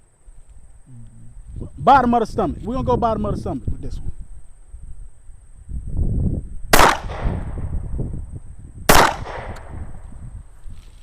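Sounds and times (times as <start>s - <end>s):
pistol shots: 6.7s - 7.5s, 8.9s - 9.8s.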